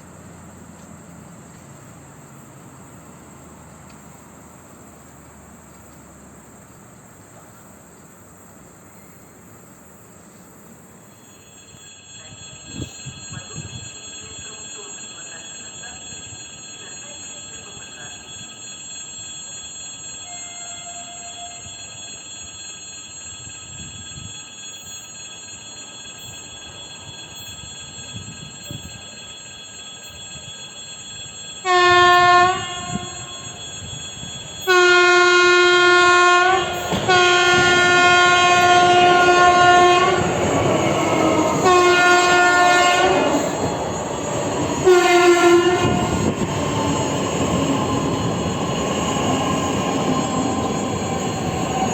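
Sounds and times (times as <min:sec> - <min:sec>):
train running noise: 0:00.0 - 0:51.9
electric train horn blasts: 0:20.2 - 0:21.9, 0:31.6 - 0:43.7, 0:44.7 - 0:46.5.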